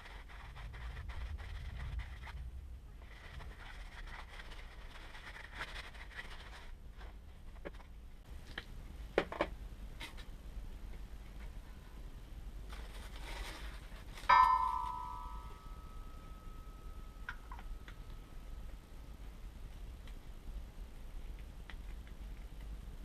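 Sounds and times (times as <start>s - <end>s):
faint scraping and handling: 0.0s - 8.0s, 10.0s - 16.5s.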